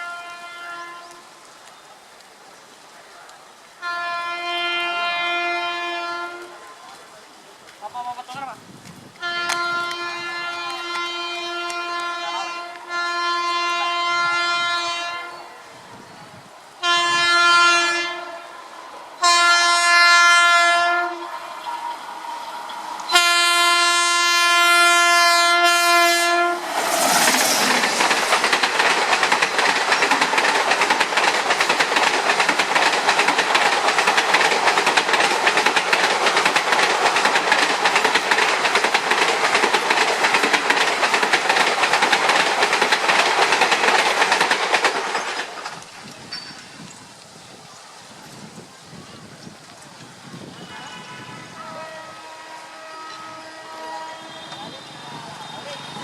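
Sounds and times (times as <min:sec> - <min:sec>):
train horn blast: 0:00.0 - 0:01.4, 0:03.8 - 0:06.8, 0:09.2 - 0:15.6, 0:16.8 - 0:28.5, 0:50.4 - 0:56.0
train wheels clickety-clack: 0:07.7 - 0:12.9, 0:26.6 - 0:47.2, 0:54.1 - 0:56.0.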